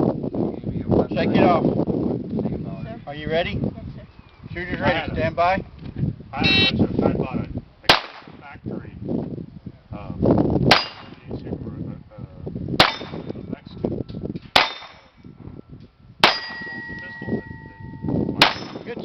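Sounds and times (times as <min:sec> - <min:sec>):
gunshots: 0:07.9 - 0:08.4, 0:14.6 - 0:15.1
steel target plate clanging: 0:10.7 - 0:11.2, 0:12.8 - 0:13.4, 0:14.3 - 0:15.2, 0:16.2 - 0:19.0.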